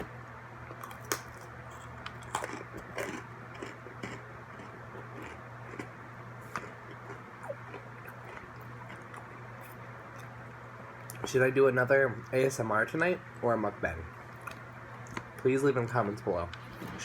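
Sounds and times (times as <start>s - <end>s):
steady low hum: 0.0s - 17.0s
pretzels being chewed: 0.6s - 11.3s.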